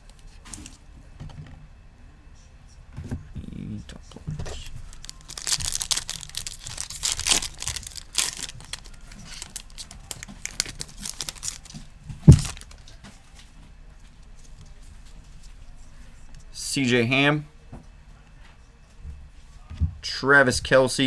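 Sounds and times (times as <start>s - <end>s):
wrapper tearing and crinkling: 4.4s - 12.9s.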